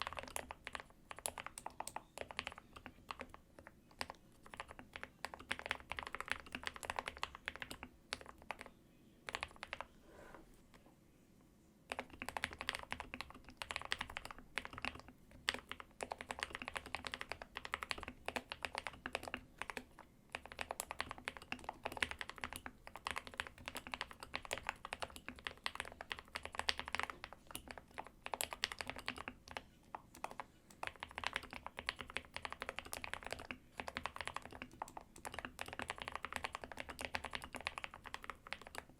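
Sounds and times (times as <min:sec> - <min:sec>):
mechanical keyboard typing: 0:00.0 - 0:09.9, 0:11.9 - 0:38.9.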